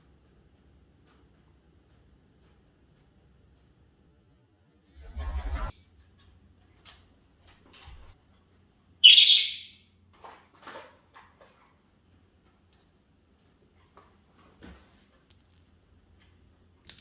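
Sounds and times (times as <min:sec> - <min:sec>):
parrot high sharp call: 0:09.0 - 0:09.8.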